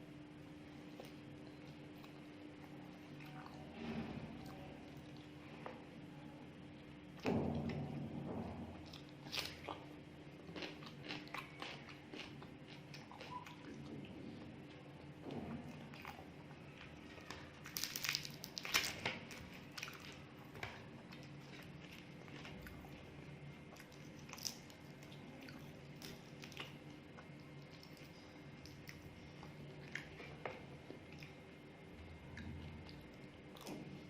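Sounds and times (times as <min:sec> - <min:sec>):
steady low hum: 0:00.0 - 0:34.0
person chewing food: 0:08.8 - 0:15.2, 0:15.9 - 0:31.4.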